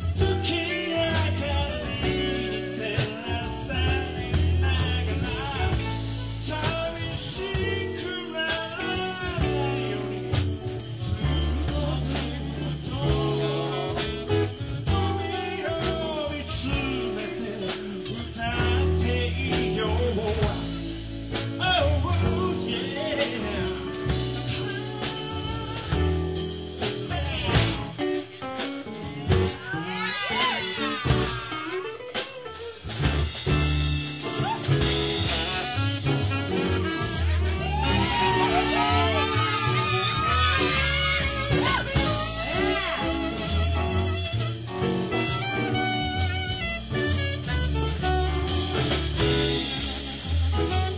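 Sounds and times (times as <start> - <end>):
live soul band playing: 0.0 - 50.9.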